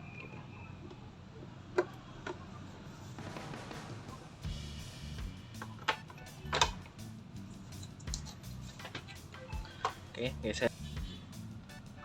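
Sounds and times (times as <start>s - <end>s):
background music with bass line: 4.4s - 12.0s.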